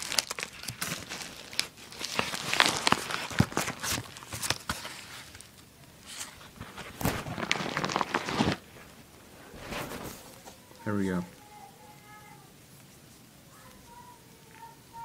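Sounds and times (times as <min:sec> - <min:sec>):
packaging crinkling and rustling: 0:00.0 - 0:10.9.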